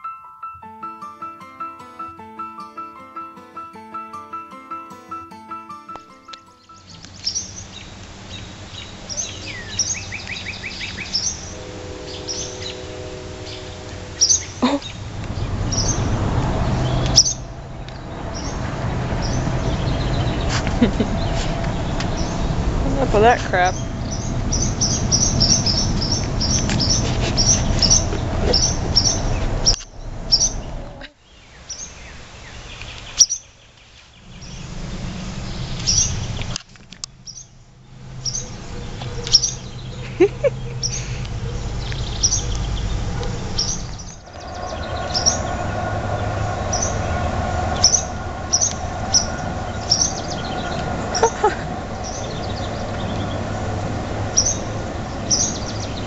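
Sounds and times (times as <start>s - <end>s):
swallows alarm calls: 6.8s - 15.1s, 15.7s - 16.1s, 16.8s - 22.6s, 23.2s - 30.8s, 38.2s - 53.5s, 54.3s - 56.0s.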